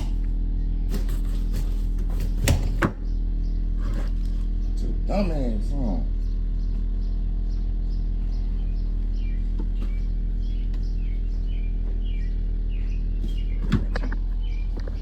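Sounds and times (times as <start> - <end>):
steady low hum: 0.0 - 15.0
small bird chirping: 2.9 - 5.0, 5.7 - 15.0.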